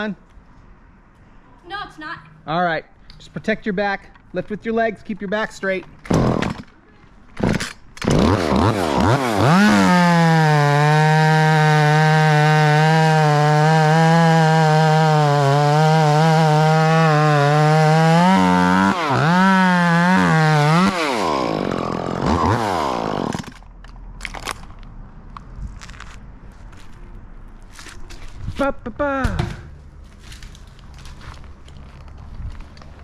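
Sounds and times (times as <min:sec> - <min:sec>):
chainsaw revving and cutting: 0:06.2 - 0:06.6, 0:07.4 - 0:23.6.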